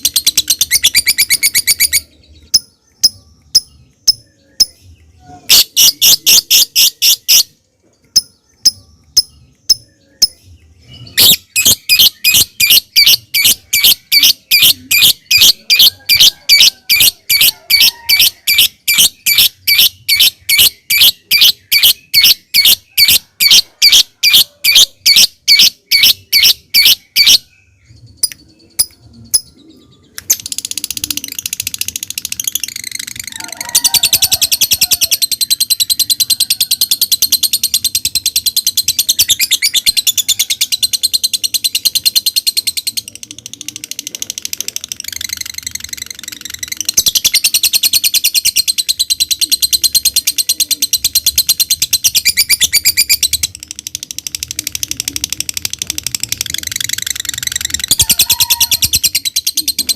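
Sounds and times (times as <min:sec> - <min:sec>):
lovebird rapid chatter: 0:00.0 - 0:04.7, 0:11.2 - 0:27.4, 0:30.2 - 0:59.9
lovebird ticking calls: 0:00.0 - 0:27.4, 0:28.2 - 0:29.5
lovebird harsh repeated song: 0:00.0 - 0:59.9.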